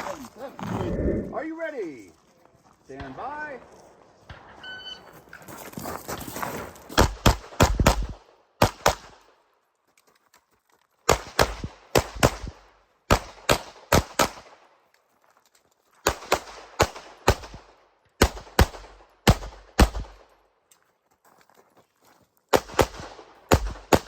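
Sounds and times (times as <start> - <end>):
pistol firing rapid shots: 7.0 - 9.2, 11.1 - 14.7, 16.1 - 20.3, 22.5 - 24.0.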